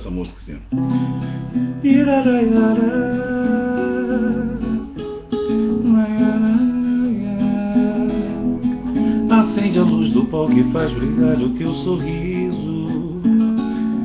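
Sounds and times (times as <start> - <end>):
acoustic guitar strumming: 0.6 - 14.0
person humming: 1.9 - 4.9, 5.8 - 13.5.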